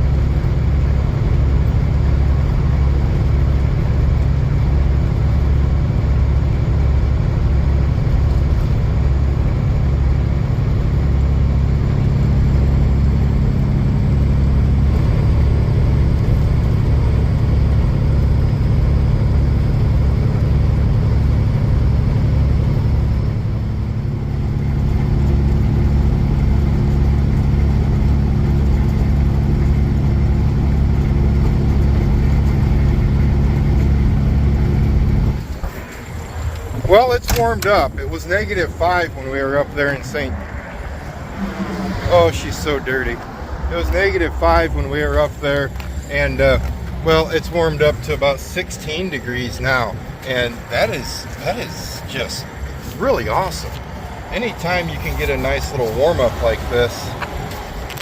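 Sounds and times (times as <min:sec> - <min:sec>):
road noise inside cab: 0:00.0 - 0:58.0
truck diesel engine drone: 0:00.0 - 0:58.0.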